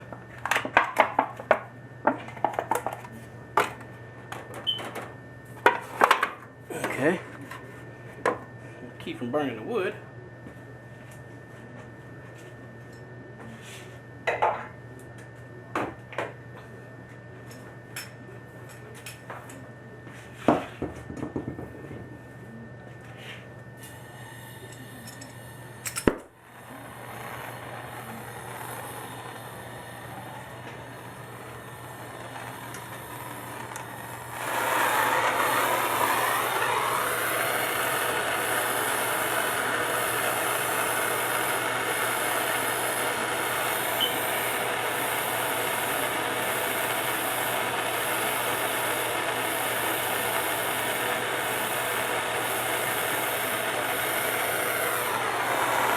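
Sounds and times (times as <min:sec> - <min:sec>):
gas torch flame hissing: 0:23.8 - 0:55.9.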